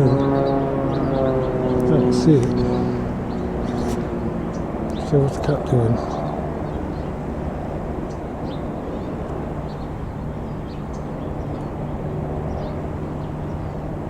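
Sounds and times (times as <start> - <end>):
birds chirping: 0.0 - 14.0
distant engine drone: 0.0 - 14.0.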